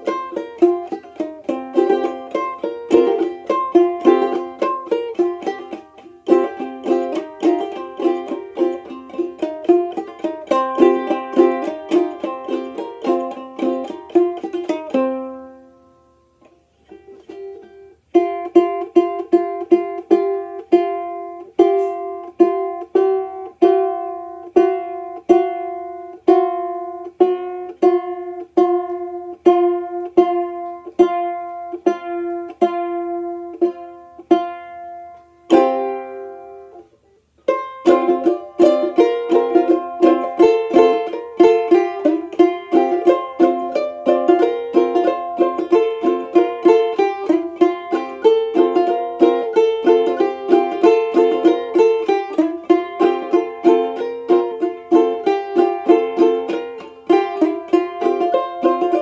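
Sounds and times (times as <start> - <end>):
banjolele strumming: 0.0 - 59.0.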